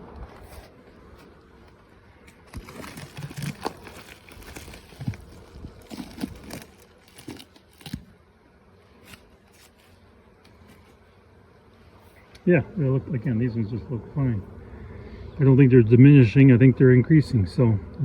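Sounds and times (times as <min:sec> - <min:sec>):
beehive boxes rustling and knocking: 0:00.3 - 0:08.2.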